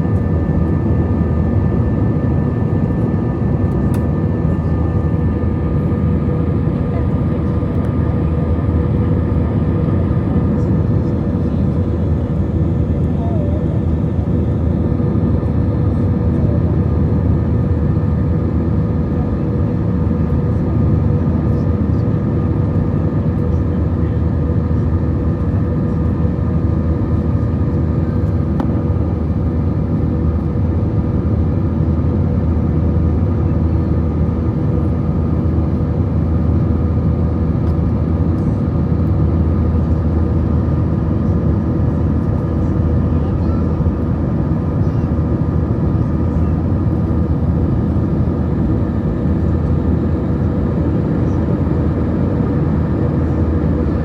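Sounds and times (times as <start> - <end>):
jet engines running: 0.0 - 54.0.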